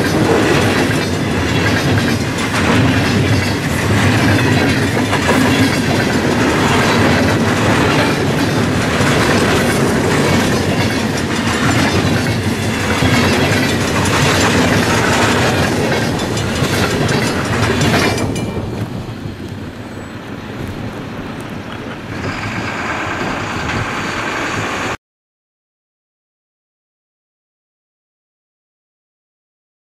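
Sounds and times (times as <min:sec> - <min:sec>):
train wheels clattering over rail joints: 0:00.0 - 0:25.0.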